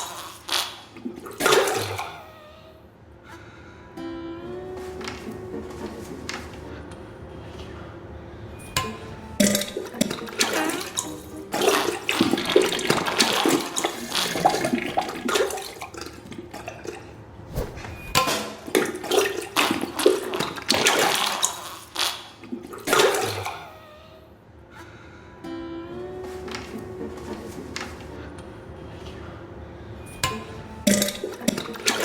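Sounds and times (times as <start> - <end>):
splashing into toilet water: 0.0 - 2.2, 9.4 - 17.0, 17.9 - 23.6, 30.9 - 32.0
wet sputtering flatulence: 0.0 - 2.4, 9.5 - 15.9, 18.9 - 23.7.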